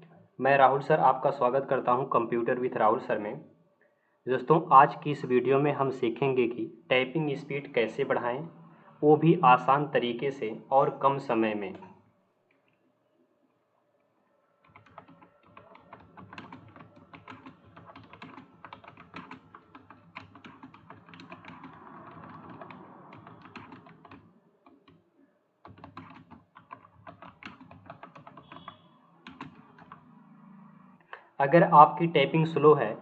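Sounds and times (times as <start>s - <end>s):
computer keyboard typing: 14.6s - 30.4s.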